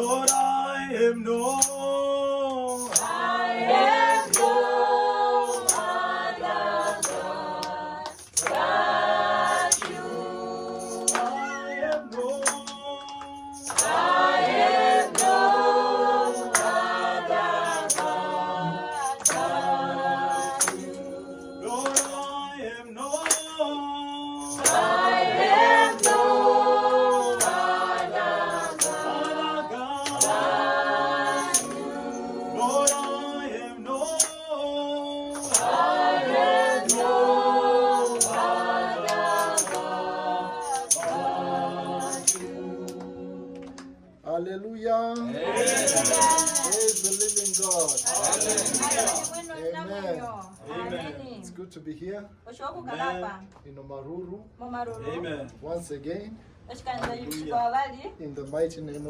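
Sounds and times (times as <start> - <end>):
group singing a worship song: 0.0 - 44.6, 45.2 - 51.4
steady percussive beat: 2.8 - 4.8, 13.6 - 21.0, 24.6 - 26.6, 27.2 - 33.4, 35.4 - 37.4, 38.0 - 42.8, 45.6 - 49.5.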